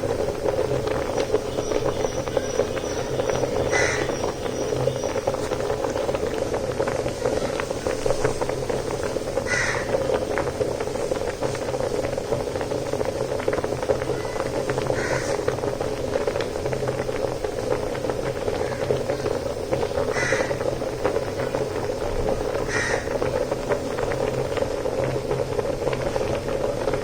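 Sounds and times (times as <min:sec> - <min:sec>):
rice boiling and bubbling: 0:00.0 - 0:27.0
bird calling: 0:01.1 - 0:05.8, 0:09.5 - 0:10.0, 0:14.1 - 0:15.4, 0:18.5 - 0:20.7, 0:22.6 - 0:23.2.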